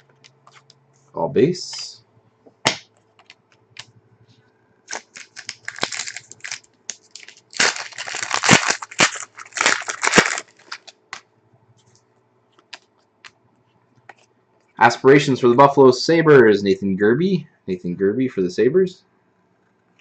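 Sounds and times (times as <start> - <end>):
foil wrapper crinkling and tearing: 4.9 - 11.2.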